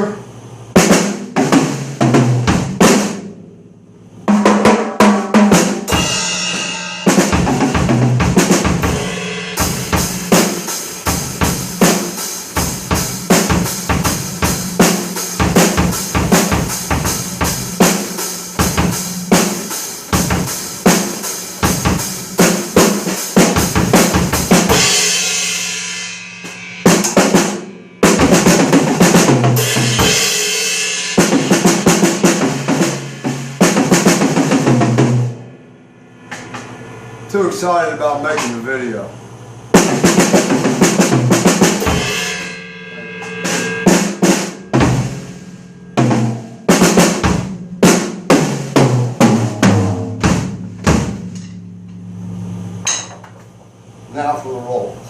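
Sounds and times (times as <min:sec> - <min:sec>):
electronic drum kit playing: 0:00.0 - 0:54.9.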